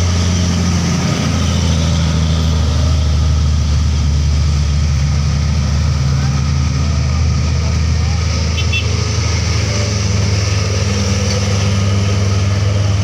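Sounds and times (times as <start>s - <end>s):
heavy diesel truck engine droning: 0.0s - 13.0s.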